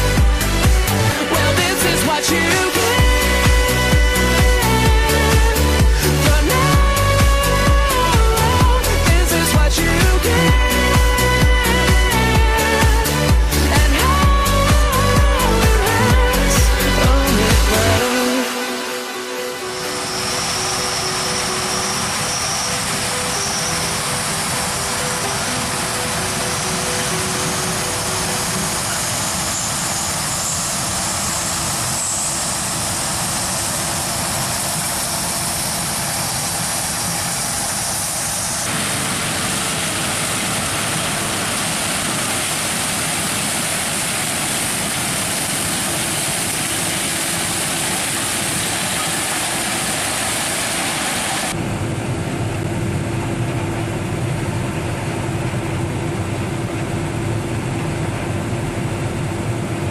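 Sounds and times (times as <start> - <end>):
heavy farm machinery running: 0.0 - 59.9
steady hum: 0.0 - 59.9
deep rumble: 51.5 - 59.9.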